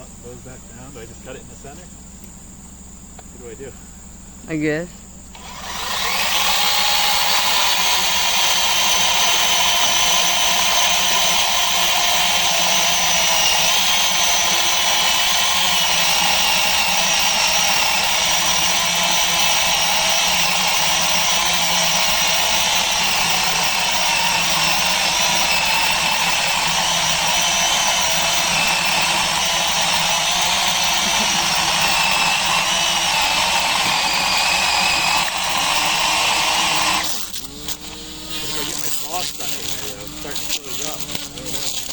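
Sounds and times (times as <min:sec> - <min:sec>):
electric chainsaw cutting log: 0:05.3 - 0:41.9.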